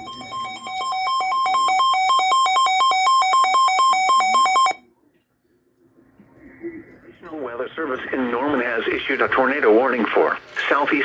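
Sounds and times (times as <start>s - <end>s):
two-pitch alarm beeping: 0.0s - 4.8s.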